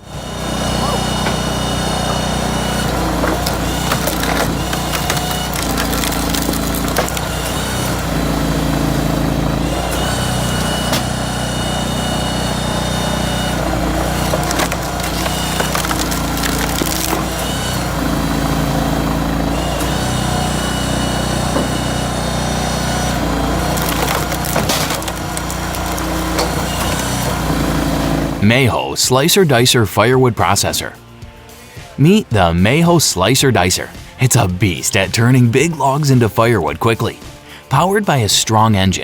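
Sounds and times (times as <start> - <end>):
log splitter engine droning: 0.0 - 39.0
logs cracking and splintering: 0.3 - 28.6.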